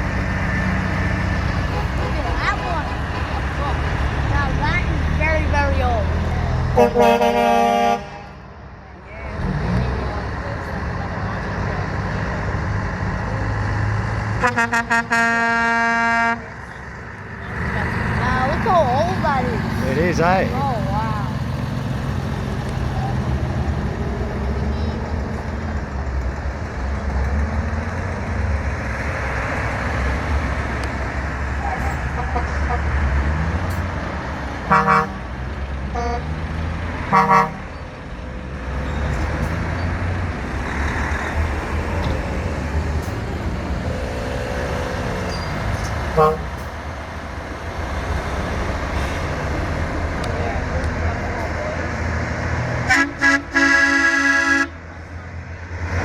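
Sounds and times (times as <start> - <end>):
truck engines rumbling: 0.0 - 56.0
truck air horn blasts: 1.6 - 3.6, 6.7 - 8.6, 14.4 - 16.5, 32.1 - 33.0, 34.7 - 36.3, 37.1 - 37.7, 46.1 - 46.7, 52.8 - 54.8.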